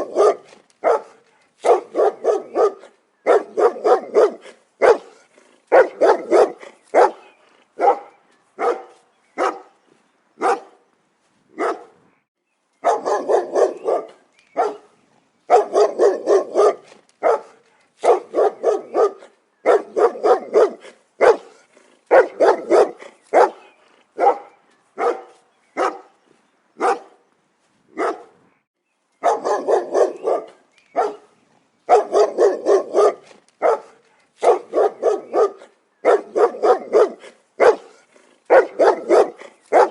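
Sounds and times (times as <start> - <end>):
dog barking: 0.0 - 9.8, 10.4 - 10.8, 11.6 - 12.0, 12.8 - 14.9, 15.5 - 26.2, 26.8 - 27.2, 28.0 - 28.4, 29.2 - 31.3, 31.9 - 39.9.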